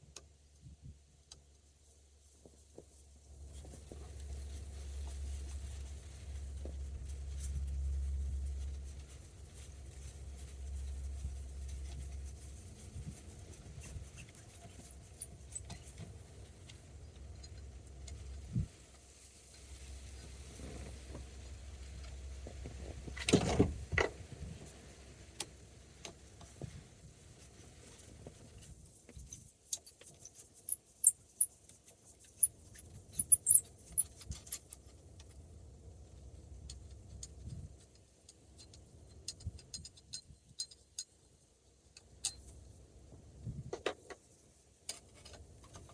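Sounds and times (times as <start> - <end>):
screwdriver clicking and squeaking: 13.2 - 16.2, 28.6 - 34.8.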